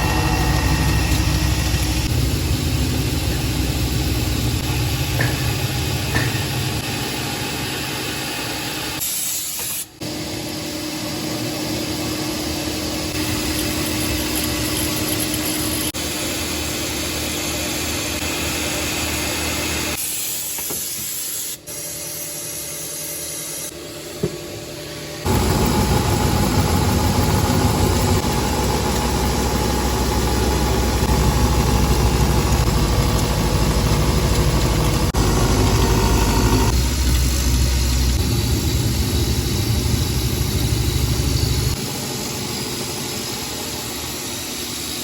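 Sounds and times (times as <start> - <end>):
milling machine cutting metal: 25.3 - 45.0.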